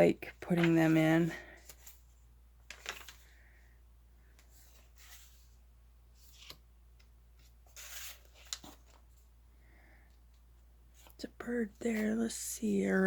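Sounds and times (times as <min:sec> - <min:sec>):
paper rustling and tapping: 0:02.6 - 0:03.3.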